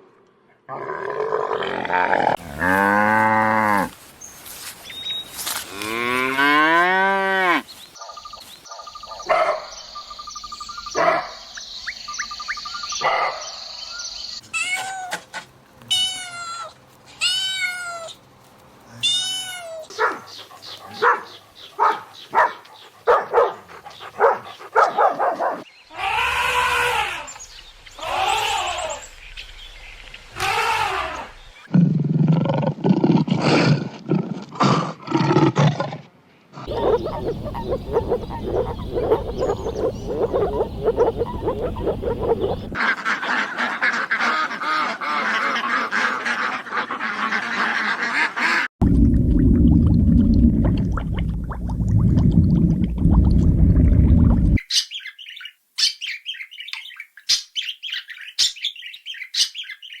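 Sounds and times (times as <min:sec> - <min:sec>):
animal calls: 0:36.7 - 0:48.7.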